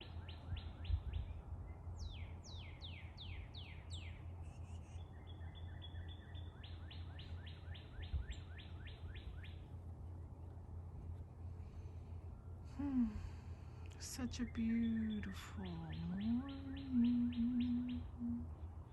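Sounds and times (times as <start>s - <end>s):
songbird whistling: 0.0s - 1.4s, 2.0s - 9.6s, 14.5s - 18.4s
low steady hum: 0.0s - 18.9s.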